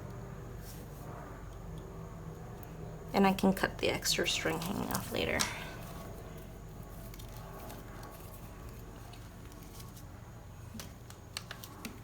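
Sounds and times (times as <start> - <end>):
steady low hum: 0.0 - 12.0
hands rustling string: 4.4 - 12.0.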